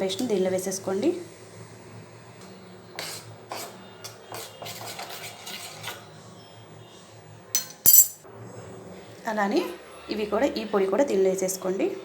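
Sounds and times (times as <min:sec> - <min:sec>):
spoon scraping a bowl: 0:02.9 - 0:06.2.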